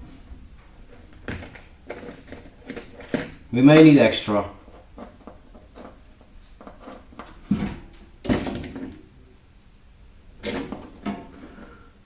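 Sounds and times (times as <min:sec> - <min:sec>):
small objects clattering: 0:00.9 - 0:09.1.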